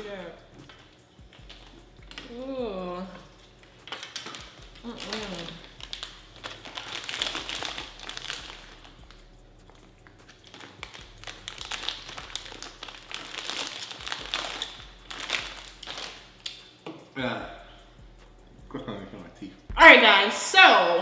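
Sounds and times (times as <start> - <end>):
crinkling and rustling: 3.6 - 9.0, 10.1 - 16.6.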